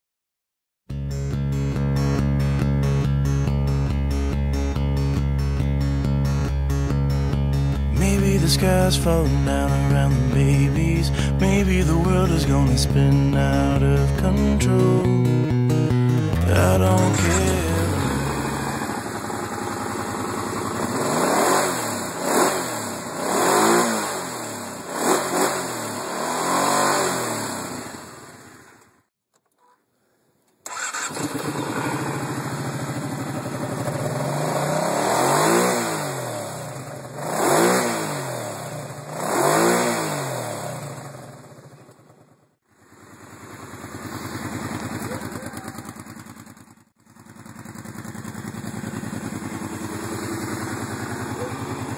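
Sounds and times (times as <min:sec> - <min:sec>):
engine revving in throttle blips: 0:15.5 - 0:28.9, 0:30.7 - 0:42.1, 0:47.9 - 0:51.9.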